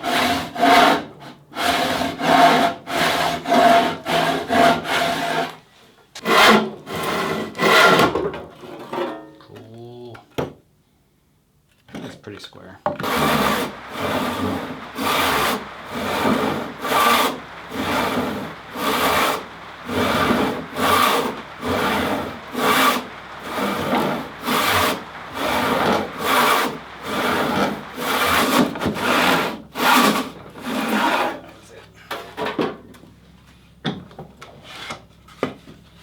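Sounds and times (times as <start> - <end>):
hand saw cutting wood: 0.0 - 5.6, 6.2 - 8.2, 13.0 - 31.6.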